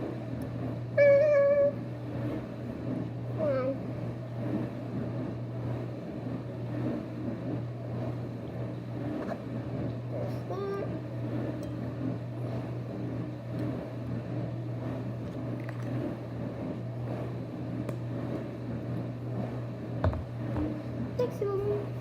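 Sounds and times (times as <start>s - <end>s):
low motor hum: 0.0s - 22.0s.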